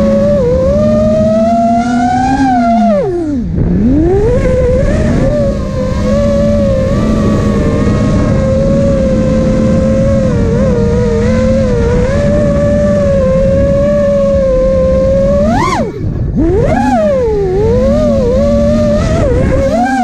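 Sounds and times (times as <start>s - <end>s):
drone motors whining: 0.0s - 20.0s.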